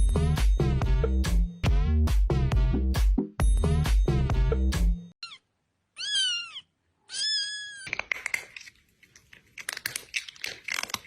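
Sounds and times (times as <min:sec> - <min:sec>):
cat meowing: 0:05.2 - 0:07.9
irregular clicks and crackling: 0:07.9 - 0:11.0.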